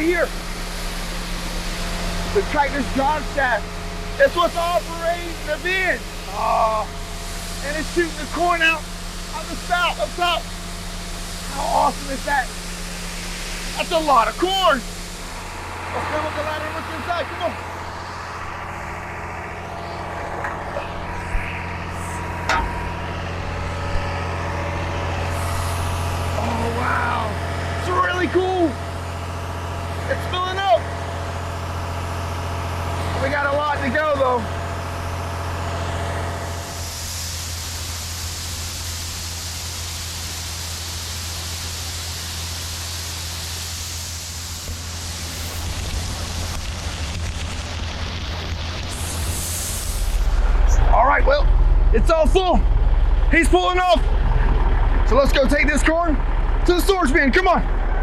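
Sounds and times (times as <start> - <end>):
grain pouring hiss: 0.0 - 30.4, 31.0 - 50.8
tractor engine under load: 0.0 - 58.0
grain pouring: 35.7 - 50.4.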